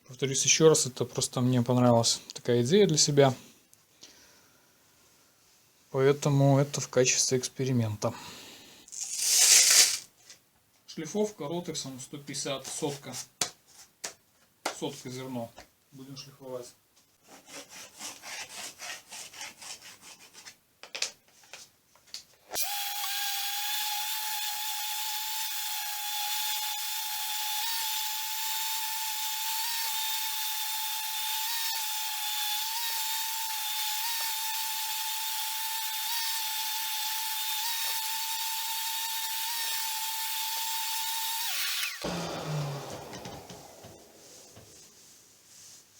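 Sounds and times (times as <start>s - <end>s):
quick rubbing: 8.9s - 10.1s
orbital sander whining: 41.3s - 45.0s.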